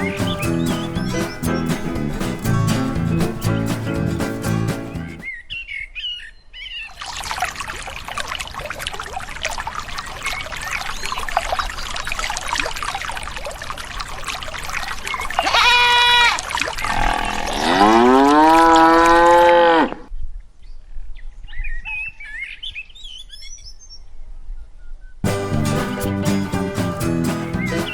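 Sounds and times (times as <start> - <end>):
cattle mooing: 15.5 - 20.1.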